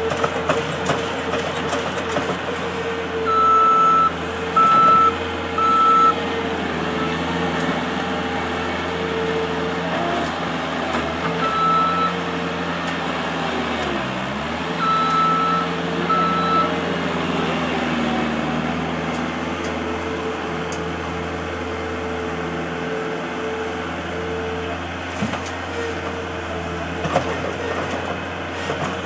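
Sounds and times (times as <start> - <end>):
skid steer engine running: 0.0 - 29.0
reversing alarm beeping: 3.2 - 6.2, 11.4 - 12.2, 14.8 - 16.8.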